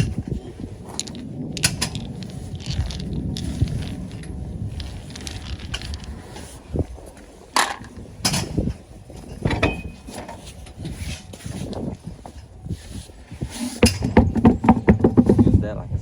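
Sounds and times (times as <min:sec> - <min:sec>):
tools and car parts clanking: 0:00.0 - 0:15.6
low steady rumble: 0:00.0 - 0:16.0.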